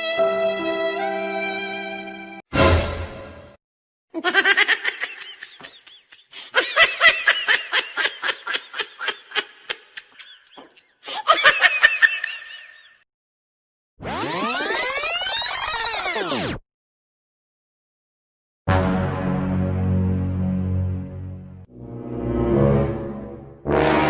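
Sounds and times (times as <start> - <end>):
high-pitched laughter: 4.2 - 13.0.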